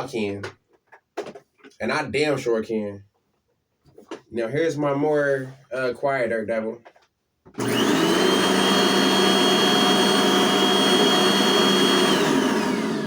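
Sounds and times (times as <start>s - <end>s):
vacuum cleaner whining: 7.6s - 13.0s
vacuum motor winding down: 7.6s - 13.0s.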